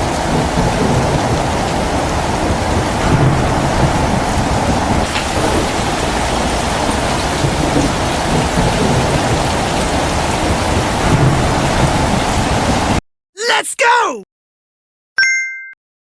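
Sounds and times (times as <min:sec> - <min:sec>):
thunder rumbling: 0:00.0 - 0:12.9
heavy rain: 0:00.0 - 0:13.0.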